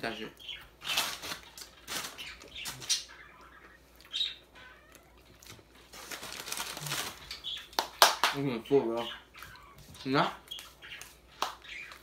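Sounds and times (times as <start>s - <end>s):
people chewing food: 2.4s - 8.3s.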